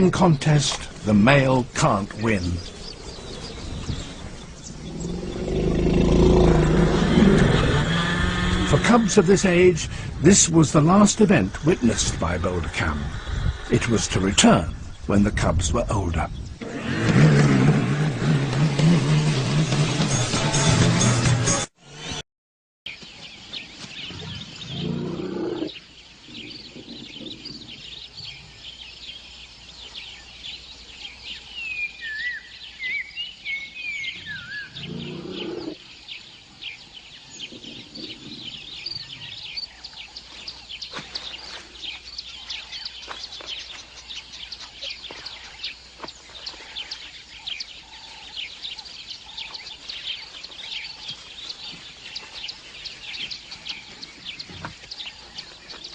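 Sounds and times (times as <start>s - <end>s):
birds chirping and calling: 0.0s - 18.9s, 22.9s - 55.9s
loud low sounds: 4.1s - 14.2s.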